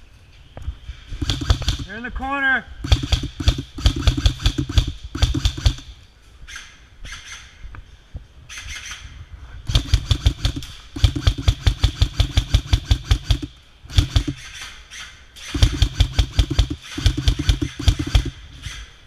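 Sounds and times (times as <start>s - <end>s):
airsoft gun firing full auto: 1.2s - 2.1s, 2.8s - 5.9s, 9.7s - 14.7s, 15.4s - 18.4s.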